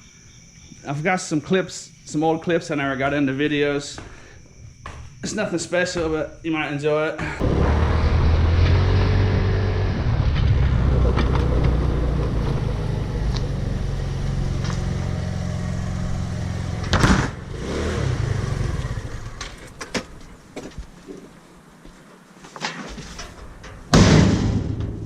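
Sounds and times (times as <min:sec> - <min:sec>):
vehicle engine running: 0:07.4 - 0:19.6.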